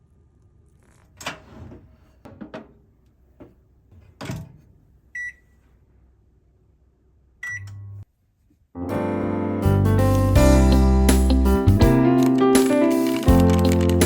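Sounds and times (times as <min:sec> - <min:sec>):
microwave beeps: 0:05.2 - 0:05.4, 0:07.4 - 0:08.0.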